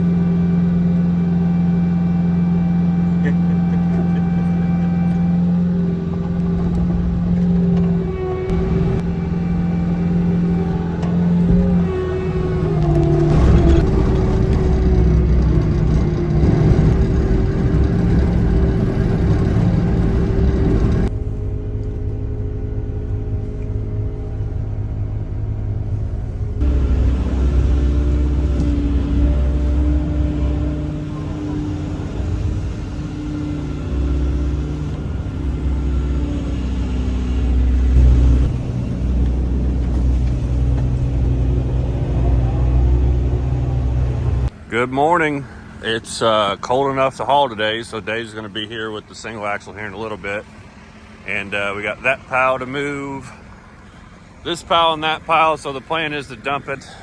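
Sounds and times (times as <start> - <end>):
dull hum: 0.0 - 57.0
heavy vehicle engine rumbling: 0.0 - 57.0.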